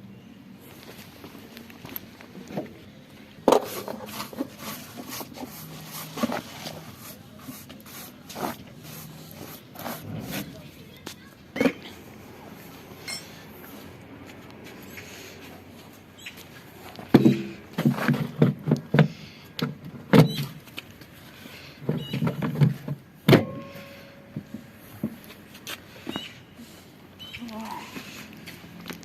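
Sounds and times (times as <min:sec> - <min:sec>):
brief ringing tone: 0:23.4 - 0:24.3.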